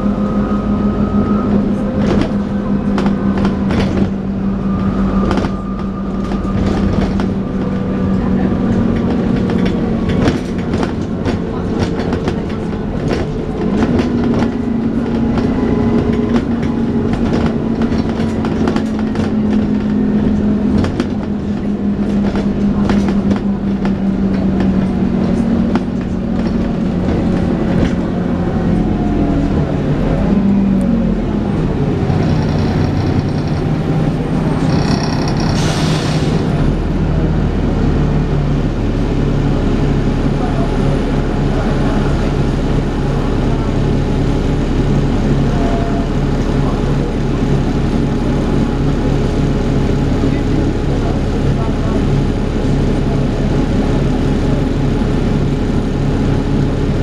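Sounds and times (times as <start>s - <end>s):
bus body rattles and clicks: 0.0s - 57.0s
bus engine whine: 0.0s - 57.0s.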